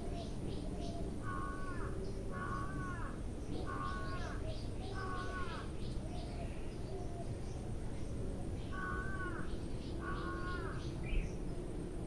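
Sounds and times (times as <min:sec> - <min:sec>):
bird two-tone cry: 0:00.0 - 0:07.4, 0:08.6 - 0:11.4.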